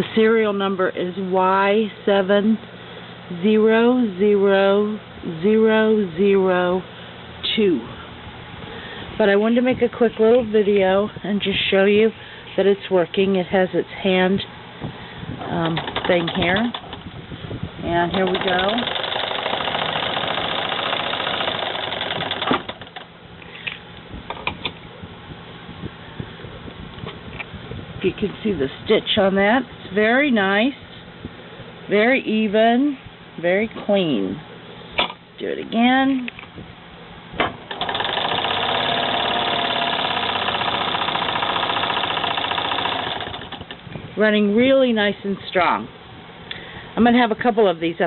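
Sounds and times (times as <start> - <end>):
sewing machine clattering: 15.6 - 17.0, 18.1 - 23.1, 37.7 - 43.8
sewing machine stopping clack: 18.1 - 23.0, 37.7 - 43.8.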